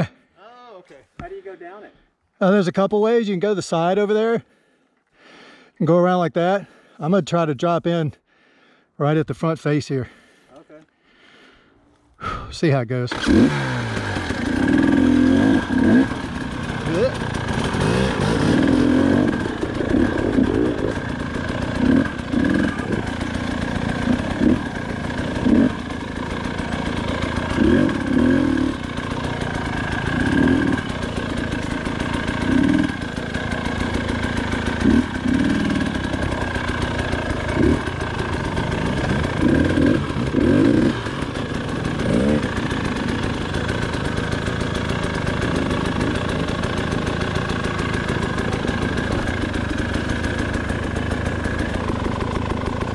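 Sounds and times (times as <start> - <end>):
dirt bike engine throttle blips: 13.1 - 52.9.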